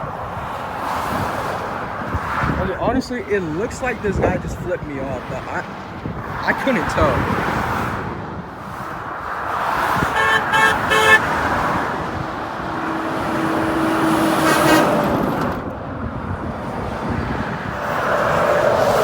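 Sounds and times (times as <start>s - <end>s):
steady road noise: 0.0s - 19.0s
vehicle horns tooting: 9.9s - 15.2s, 17.0s - 19.0s.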